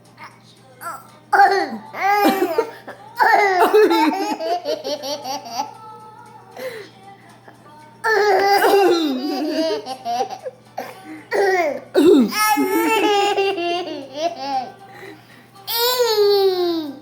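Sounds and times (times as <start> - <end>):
small child laughing: 8.7 - 14.7.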